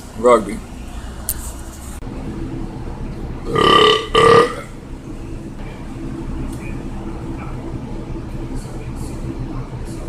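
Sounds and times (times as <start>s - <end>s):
man belching loudly: 3.5s - 4.8s.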